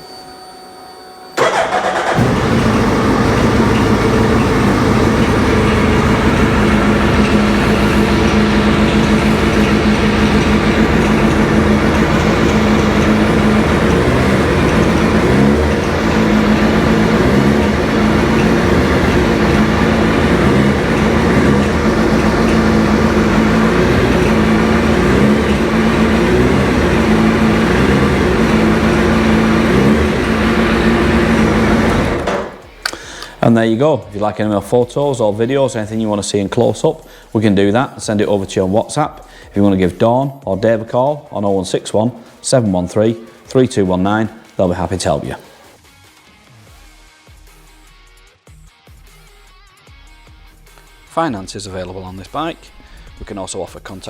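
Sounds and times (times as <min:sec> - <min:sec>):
motorcycle engine idling and revving: 0:01.4 - 0:33.4, 0:41.6 - 0:45.7.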